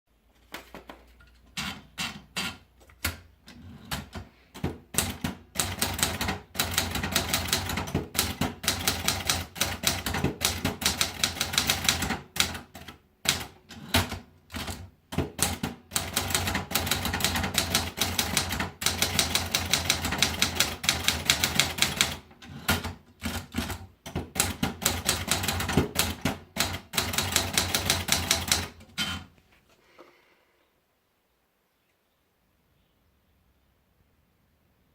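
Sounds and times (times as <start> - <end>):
manual typewriter keystrokes: 1.5 - 29.3.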